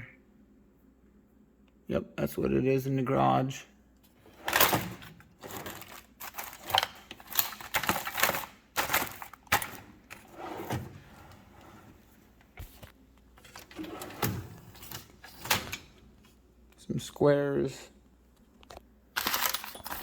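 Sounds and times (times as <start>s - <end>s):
tools shifting in metal drawer: 4.2s - 12.1s, 13.4s - 16.1s, 19.2s - 20.0s.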